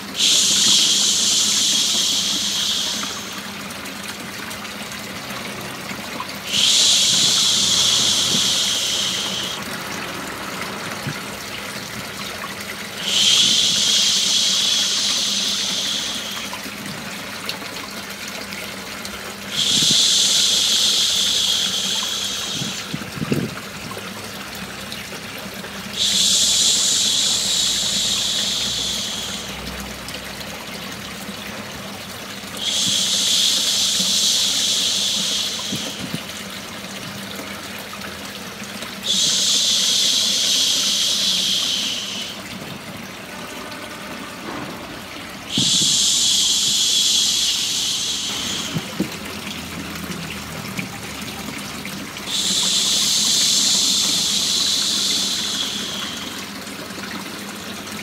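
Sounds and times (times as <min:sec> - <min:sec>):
running water white noise: 0:00.0 - 0:58.0
person shushing: 0:06.5 - 0:09.6, 0:13.0 - 0:16.6, 0:45.5 - 0:49.0.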